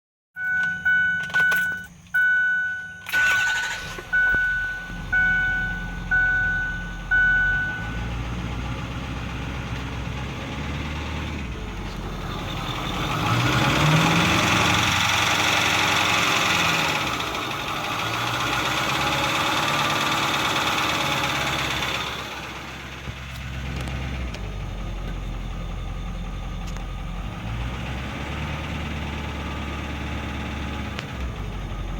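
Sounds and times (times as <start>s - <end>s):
dashboard warning chime: 0.4s - 8.3s
diesel engine starting and revving: 0.4s - 31.9s
engine ticking: 0.4s - 31.9s.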